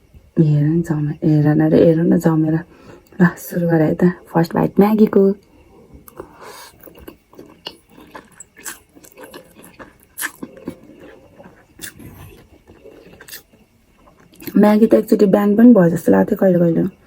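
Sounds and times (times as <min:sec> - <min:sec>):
person chewing noodles: 0:05.4 - 0:14.6.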